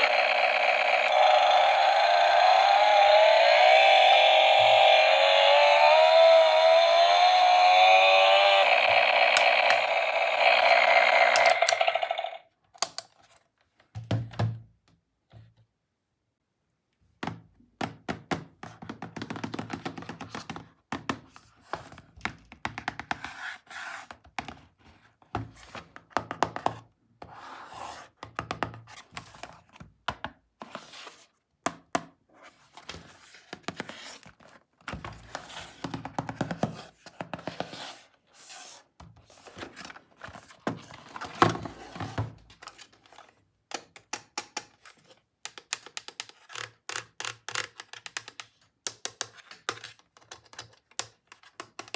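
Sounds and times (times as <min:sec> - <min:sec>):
plastic toys clicking and knocking: 0:07.7 - 0:13.1, 0:43.7 - 0:51.9.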